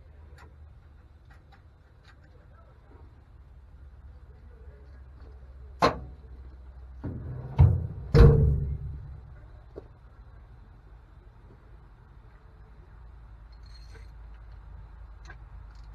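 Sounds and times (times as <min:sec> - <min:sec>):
sharp knocks: 0:07.0 - 0:09.4
low rumble: 0:07.0 - 0:09.6.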